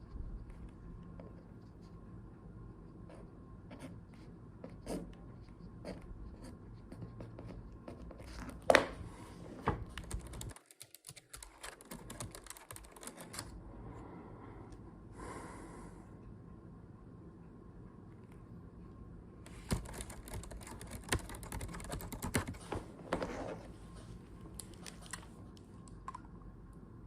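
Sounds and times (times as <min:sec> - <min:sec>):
keyboard typing: 0:09.8 - 0:13.6, 0:19.5 - 0:22.7.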